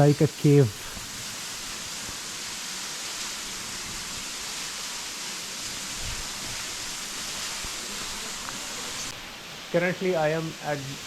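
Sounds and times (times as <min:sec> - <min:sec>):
waterfall splashing: 0:00.0 - 0:11.0.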